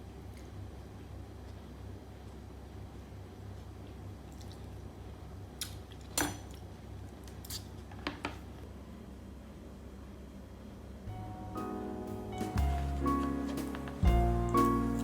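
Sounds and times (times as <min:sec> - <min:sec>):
steady low hum: 0:08.8 - 0:15.0.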